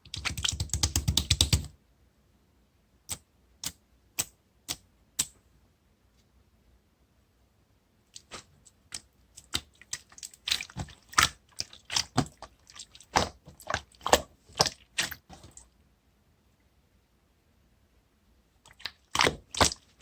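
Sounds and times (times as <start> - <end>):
slime squishing with wet pops: 0.0 - 1.7, 8.1 - 15.7, 18.7 - 20.0.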